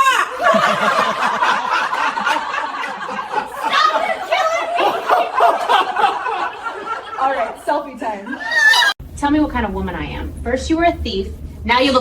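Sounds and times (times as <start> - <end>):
people laughing: 0.0 - 9.0.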